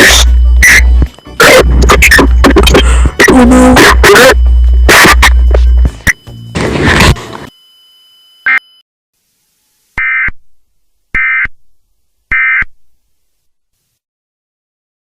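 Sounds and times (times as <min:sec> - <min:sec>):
buzzy digital data tones: 0:00.0 - 0:08.8
short beep: 0:00.0 - 0:08.8.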